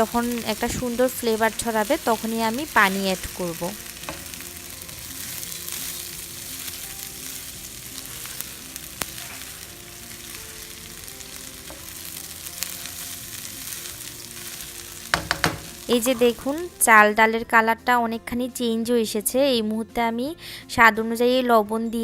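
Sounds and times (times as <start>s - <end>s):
stirring clicks: 0.0s - 16.6s
rice and lentils sizzling in oil: 0.0s - 17.2s.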